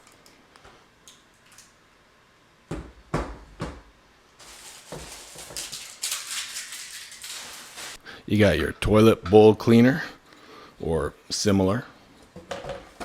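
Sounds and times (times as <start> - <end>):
rustling: 4.4 - 8.0.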